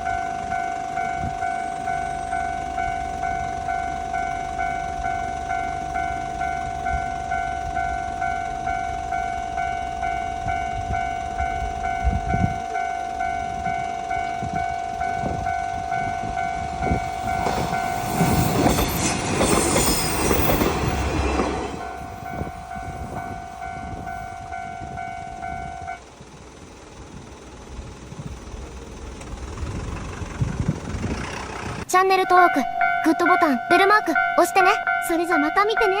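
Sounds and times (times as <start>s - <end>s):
railroad crossing bell ringing: 0.0s - 29.0s, 31.9s - 36.0s
train passing with wheel clacks: 0.0s - 36.0s.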